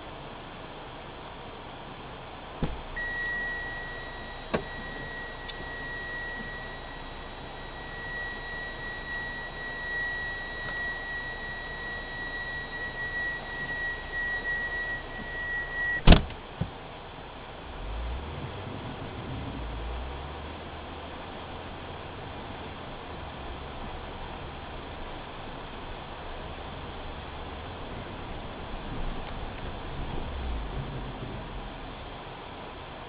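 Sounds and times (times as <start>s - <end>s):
car door shutting: 2.6s - 3.5s, 4.4s - 6.6s, 15.1s - 16.8s
high electronic warning tone: 2.6s - 16.2s.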